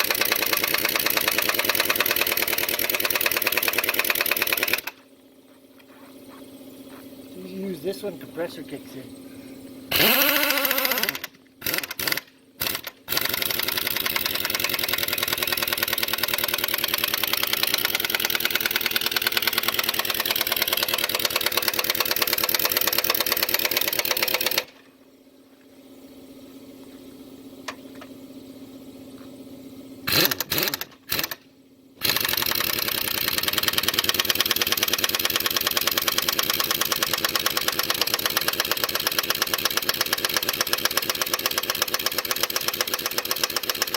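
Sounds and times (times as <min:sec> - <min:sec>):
air impact wrench hammering: 0:00.0 - 0:05.1, 0:09.9 - 0:24.9, 0:30.0 - 0:43.9
air compressor humming: 0:00.0 - 0:43.9.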